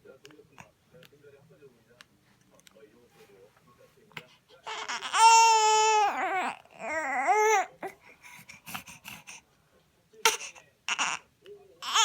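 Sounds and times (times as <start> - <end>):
baby crying: 4.6 - 8.0, 10.2 - 12.0.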